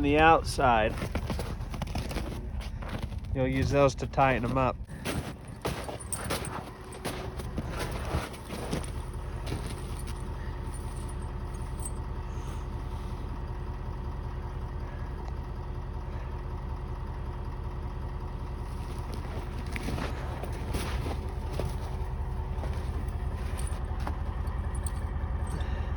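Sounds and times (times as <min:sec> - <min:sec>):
snow chain clinking: 0:00.0 - 0:13.4, 0:18.6 - 0:25.7
vehicle engine idling: 0:00.0 - 0:25.9.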